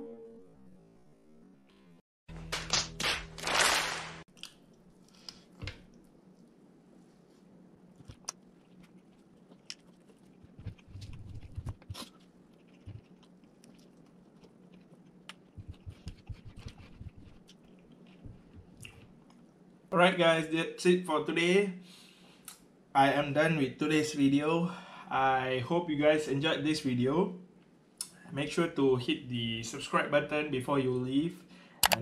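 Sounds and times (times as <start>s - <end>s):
person chewing food: 7.9s - 19.5s.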